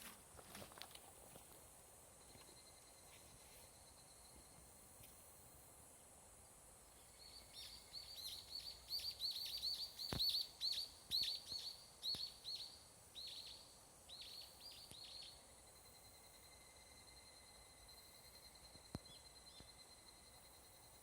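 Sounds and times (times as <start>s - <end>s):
distant cicadas trilling: 0.0s - 21.0s
cicada calling falling notes: 7.1s - 16.2s.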